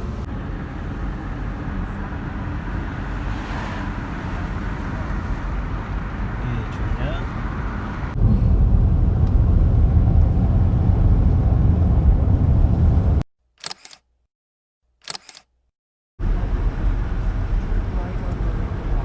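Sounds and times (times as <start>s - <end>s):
loud low rumble: 6.8s - 13.2s
camera shutter clicks: 13.6s - 14.0s, 15.0s - 15.5s.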